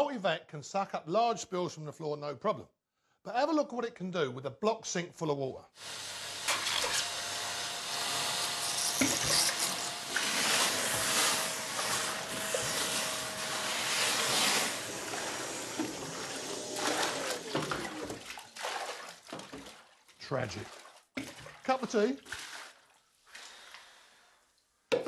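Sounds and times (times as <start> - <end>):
vacuum sucking water: 5.8 - 19.0
vacuum motor whine: 5.9 - 17.5.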